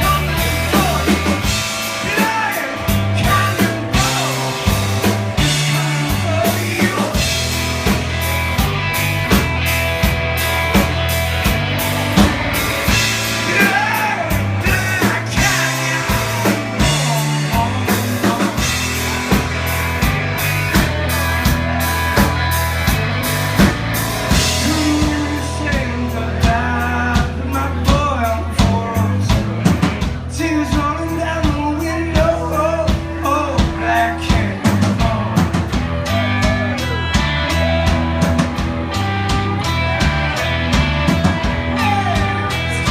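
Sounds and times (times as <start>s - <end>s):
person singing: 0.0s - 7.6s, 12.8s - 19.1s, 24.3s - 38.2s, 41.3s - 42.9s
bass guitar: 0.0s - 42.9s
drum kit beat: 0.0s - 42.9s.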